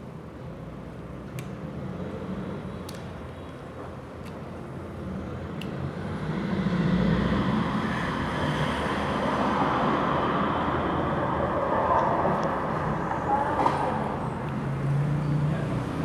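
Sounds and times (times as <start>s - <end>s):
vehicle passing by: 6.1s - 16.0s.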